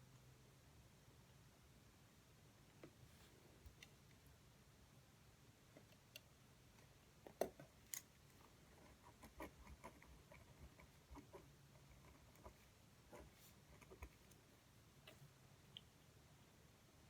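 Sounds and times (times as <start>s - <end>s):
faint small clicks and taps: 3.6s - 4.3s, 5.7s - 8.5s, 15.0s - 16.1s.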